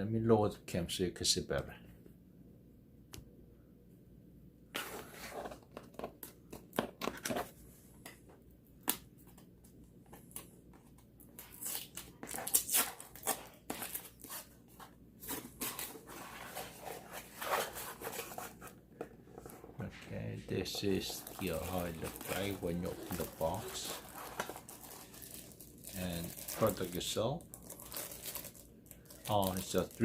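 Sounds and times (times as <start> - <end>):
packaging crinkling and rustling: 20.7 - 30.0.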